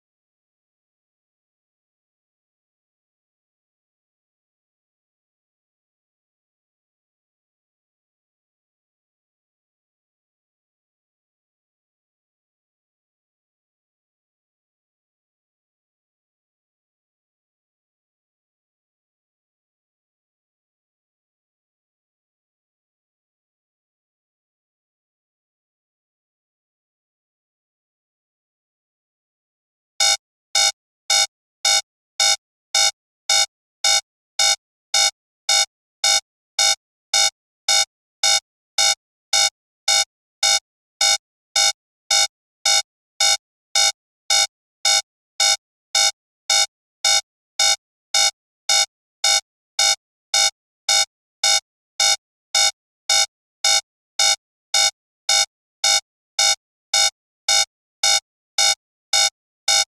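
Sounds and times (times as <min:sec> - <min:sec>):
electronic timer beeping: 0:30.0 - 0:59.9.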